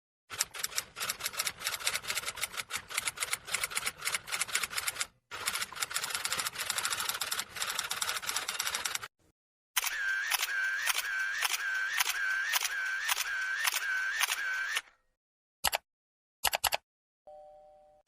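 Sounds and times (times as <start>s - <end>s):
keyboard typing clicks: 15.6s - 15.8s, 16.4s - 16.8s.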